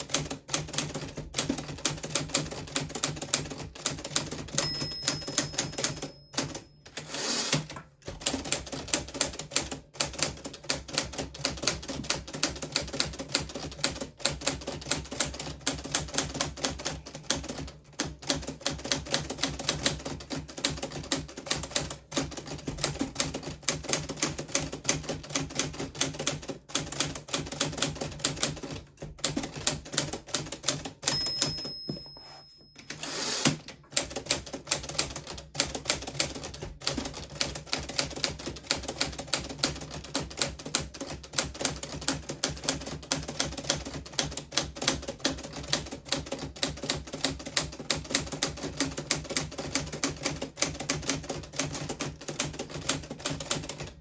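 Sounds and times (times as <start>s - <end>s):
typewriter bell ring: 4.2s - 7.7s, 31.0s - 33.6s
typewriter carriage return sweep: 6.9s - 7.8s, 32.3s - 33.8s.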